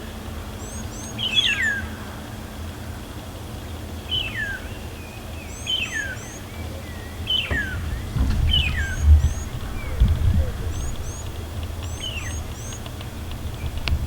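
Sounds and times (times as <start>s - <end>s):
low rumble: 7.2s - 14.0s.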